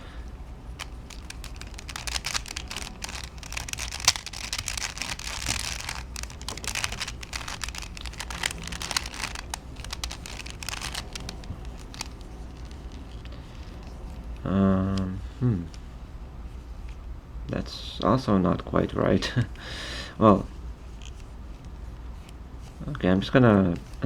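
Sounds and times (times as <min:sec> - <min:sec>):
puzzle cube clicking: 0:00.7 - 0:13.8.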